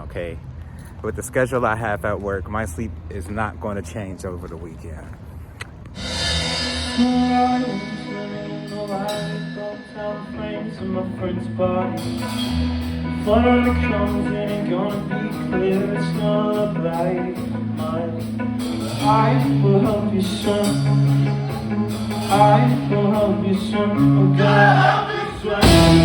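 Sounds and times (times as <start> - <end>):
bass guitar: 5.2 - 26.0
cymbal strokes: 6.0 - 10.4
electric guitar: 6.0 - 26.0
person singing: 6.9 - 12.3, 13.2 - 26.0.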